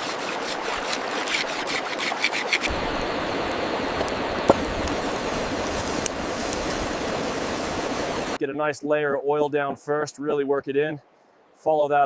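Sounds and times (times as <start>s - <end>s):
campfire crackling and popping: 2.6s - 8.4s
fire rushing hiss: 2.6s - 8.4s.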